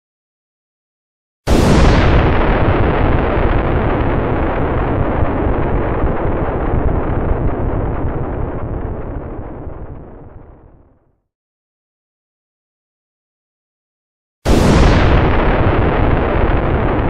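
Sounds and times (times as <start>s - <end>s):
explosion rumble: 1.5s - 11.1s, 14.5s - 17.0s.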